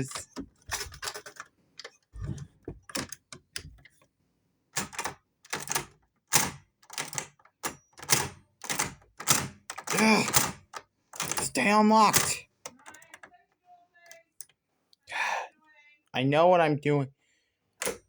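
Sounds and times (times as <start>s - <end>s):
door lock clicks and rattles: 0.0s - 3.9s, 4.7s - 13.4s, 17.8s - 18.0s.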